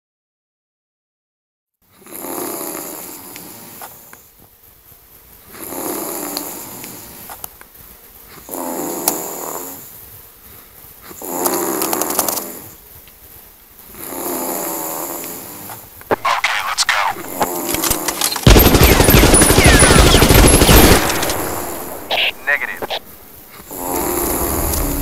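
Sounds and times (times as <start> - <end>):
sharp clicks: 16.1 - 23.2.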